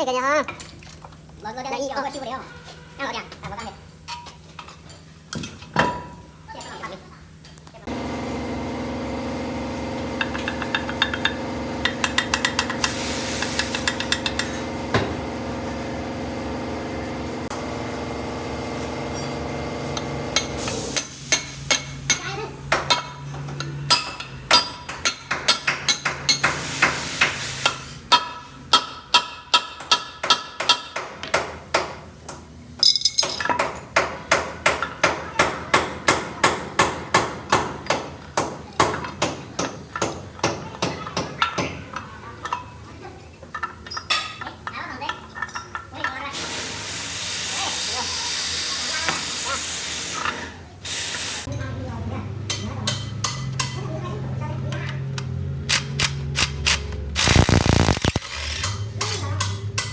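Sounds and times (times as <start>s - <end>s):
machine hum: 57.1s - 58.7s.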